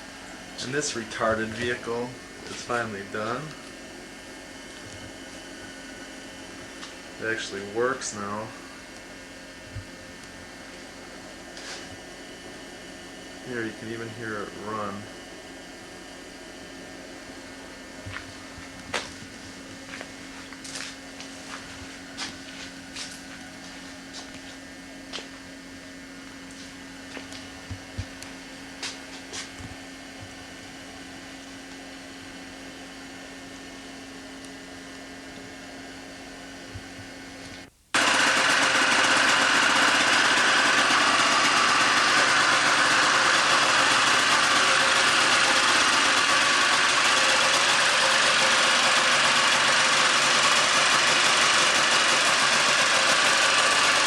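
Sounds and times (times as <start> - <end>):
vehicle engine running: 38.0 - 54.0.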